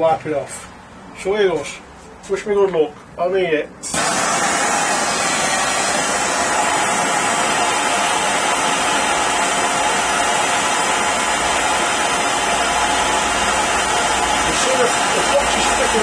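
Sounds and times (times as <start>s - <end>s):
blowlamp flame hissing: 3.8s - 16.0s.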